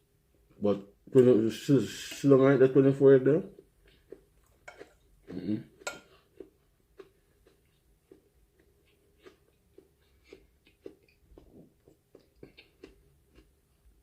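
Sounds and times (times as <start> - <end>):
slow chewing: 3.4 - 14.0.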